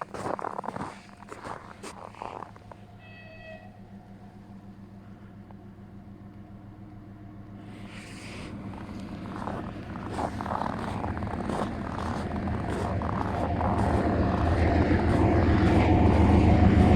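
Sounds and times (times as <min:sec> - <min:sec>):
diesel locomotive engine hum: 0:00.0 - 0:16.9
train wheels rattling on rails: 0:07.4 - 0:16.9.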